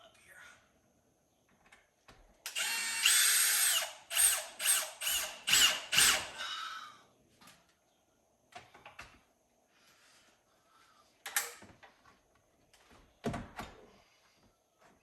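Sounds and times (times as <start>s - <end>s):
power drill driving a screw: 2.5s - 6.4s.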